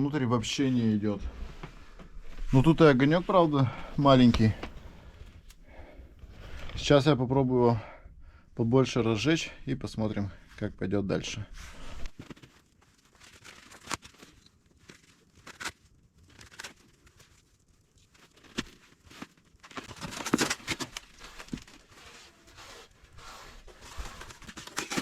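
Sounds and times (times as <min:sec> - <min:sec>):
paper crumpling and tearing: 0:12.2 - 0:25.0.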